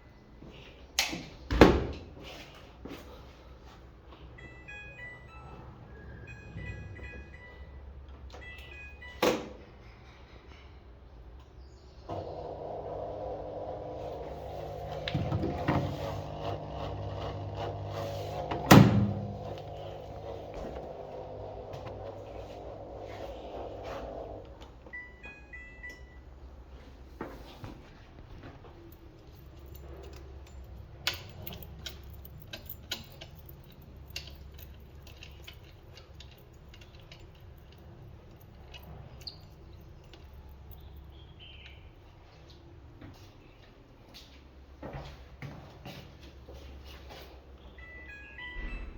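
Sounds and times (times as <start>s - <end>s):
low steady hum: 11.6s - 41.8s
washing machine motor humming: 12.0s - 26.4s
tools clicking and tapping: 29.2s - 40.9s.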